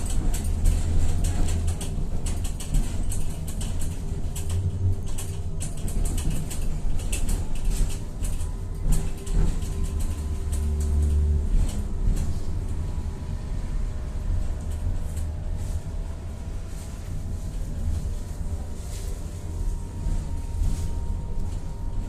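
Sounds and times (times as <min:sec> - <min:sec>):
clicks and rattles: 0:00.0 - 0:12.3
tram wheels rumbling on rails: 0:00.0 - 0:22.0
steady whine: 0:15.1 - 0:22.0.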